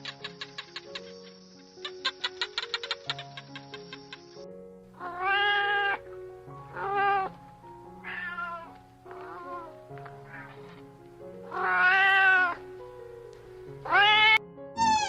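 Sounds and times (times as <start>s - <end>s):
background music: 0.0s - 15.0s
cat meowing: 5.0s - 6.0s, 6.7s - 7.4s, 8.0s - 10.6s, 11.4s - 12.6s, 13.8s - 15.0s.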